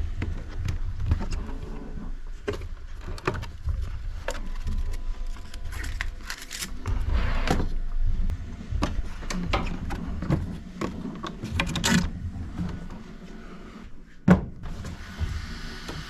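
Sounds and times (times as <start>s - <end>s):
hands handling plastic parts: 9.6s - 12.2s.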